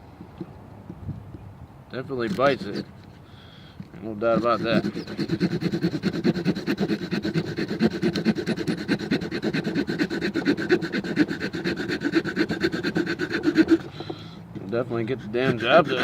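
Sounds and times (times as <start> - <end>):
saw blade cutting wood: 2.2 - 3.0, 4.2 - 16.0.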